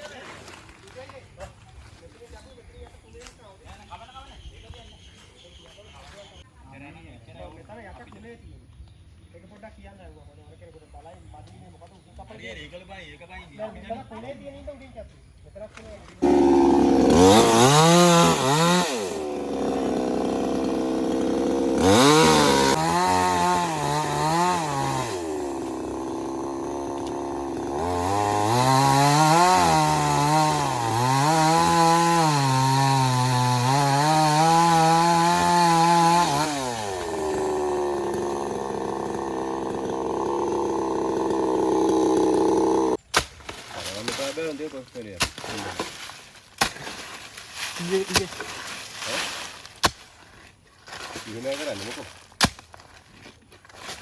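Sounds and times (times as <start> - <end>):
chainsaw cutting into tree: 16.2 - 54.0.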